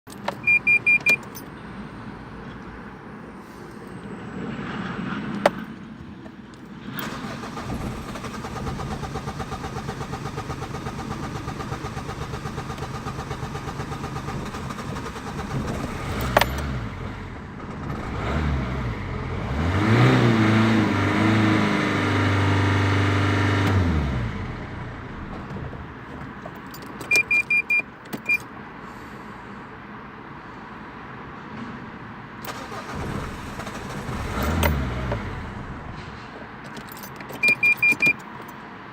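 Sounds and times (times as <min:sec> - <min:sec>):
short high beeps: 0:00.4 - 0:01.3, 0:27.1 - 0:28.5, 0:37.4 - 0:38.2
diesel engine revving: 0:06.8 - 0:25.9, 0:32.4 - 0:36.4.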